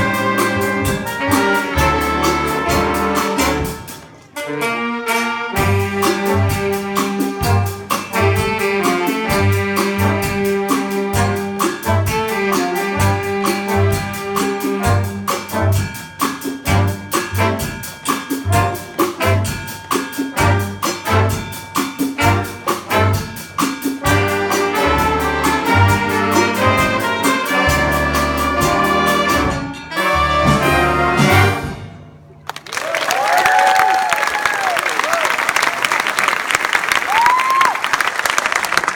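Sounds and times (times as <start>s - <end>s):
steady drum beat: 0.0s - 4.2s, 5.6s - 31.8s
jazz ensemble horns playing: 0.0s - 32.4s
applause: 32.4s - 38.9s.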